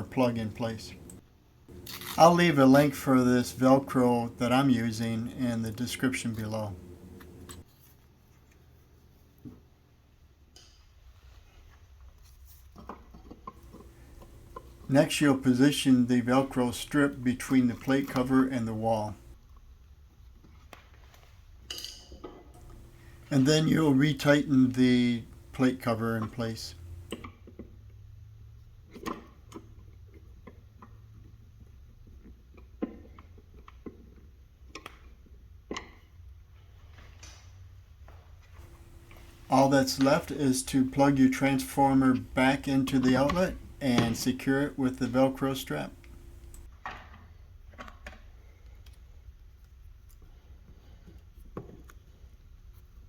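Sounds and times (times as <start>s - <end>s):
low steady hum: 0.0s - 7.7s, 13.5s - 19.4s, 22.6s - 27.3s, 38.6s - 46.7s
hook-and-loop strap fastening: 1.8s - 2.3s
low hum: 38.6s - 46.7s.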